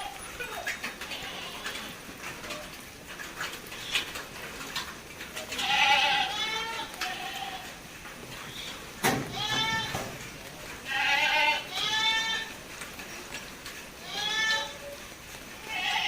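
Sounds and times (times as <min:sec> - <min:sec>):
farm animal bleating: 0:00.0 - 0:02.1, 0:05.4 - 0:10.2, 0:10.8 - 0:12.6, 0:14.0 - 0:15.0, 0:15.6 - 0:16.0.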